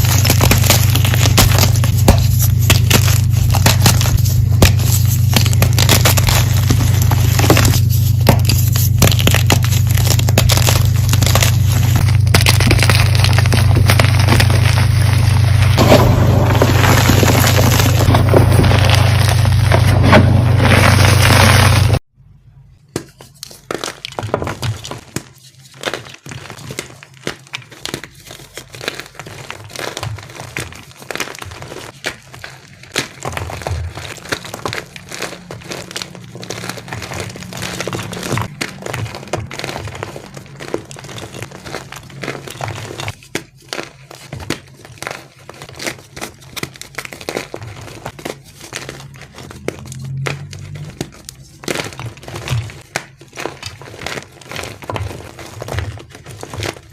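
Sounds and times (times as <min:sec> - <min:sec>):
chalk being crushed: 0:00.0 - 0:22.0, 0:23.0 - 0:56.9
low hum: 0:00.0 - 0:22.6.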